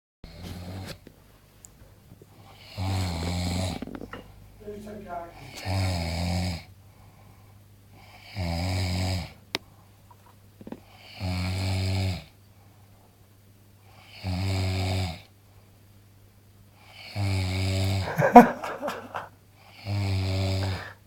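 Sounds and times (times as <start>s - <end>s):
man snoring loudly: 2.4s - 4.1s, 5.1s - 6.7s, 8.0s - 9.4s, 11.0s - 12.3s, 14.0s - 15.3s, 16.9s - 18.6s, 19.7s - 21.0s.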